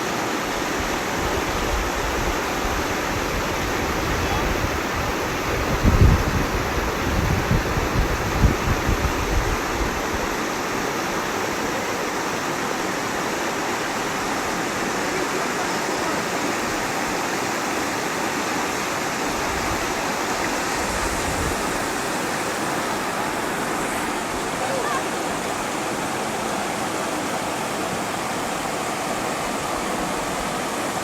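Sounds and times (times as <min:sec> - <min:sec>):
rushing water: 0:00.0 - 0:31.0
wind buffeting microphone: 0:01.2 - 0:10.6, 0:19.3 - 0:22.2.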